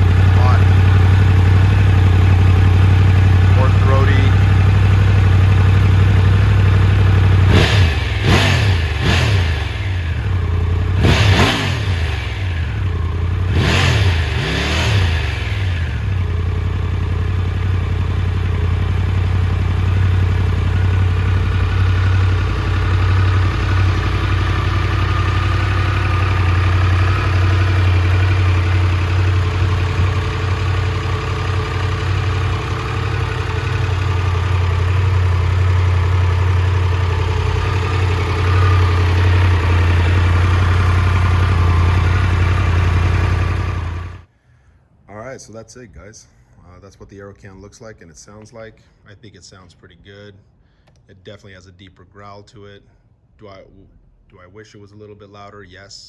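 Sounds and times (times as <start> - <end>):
motorcycle engine revving and idling: 0.0 - 44.3.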